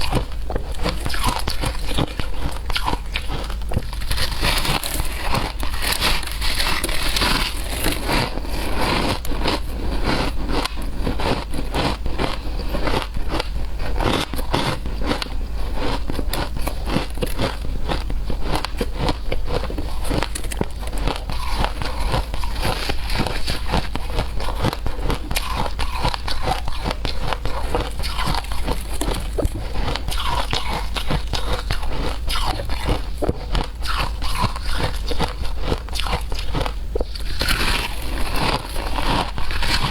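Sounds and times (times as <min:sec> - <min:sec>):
shaved ice crunching: 0:01.0 - 0:10.3.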